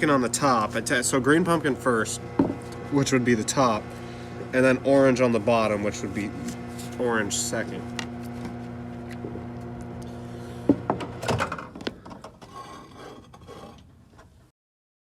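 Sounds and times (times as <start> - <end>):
electrical hum: 0.0 - 12.6
sharp knocks: 2.4 - 2.6.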